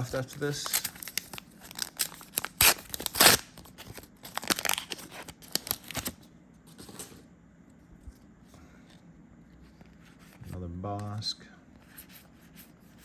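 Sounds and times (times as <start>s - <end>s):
foil wrapper tearing and crinkling: 0.0s - 6.2s.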